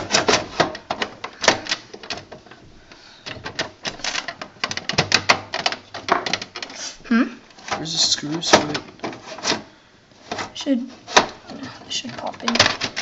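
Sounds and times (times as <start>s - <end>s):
computer hardware clicks and rattles: 0.0s - 6.8s, 10.3s - 13.0s.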